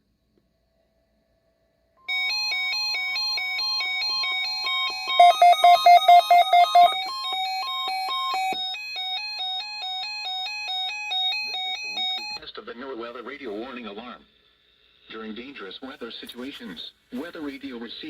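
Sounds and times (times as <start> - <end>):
alert alarm beeping: 2.1 - 12.4
steady warning tone: 2.1 - 12.4
short beeps: 5.1 - 7.0.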